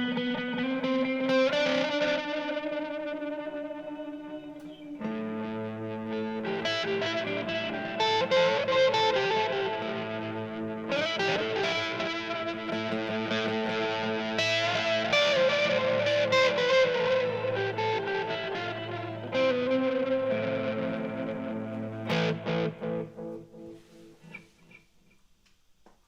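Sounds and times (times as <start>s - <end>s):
electric guitar with delay: 0.0s - 24.8s.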